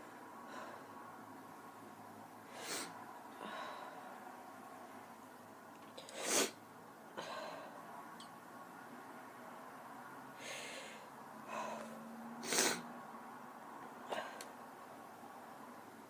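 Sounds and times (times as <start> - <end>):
breathy bursts: 7.2 - 7.8, 10.4 - 12.8.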